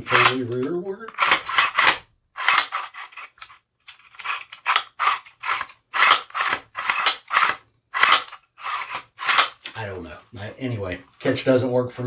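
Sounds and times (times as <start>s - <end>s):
rifle bolt racking: 0.1s - 9.6s.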